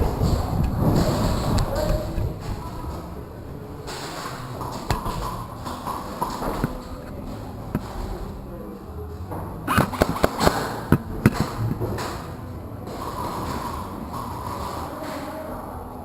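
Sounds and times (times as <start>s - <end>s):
bbs hitting targets: 3.8s - 8.3s, 9.6s - 15.4s
airsoft gunshots: 9.7s - 11.7s.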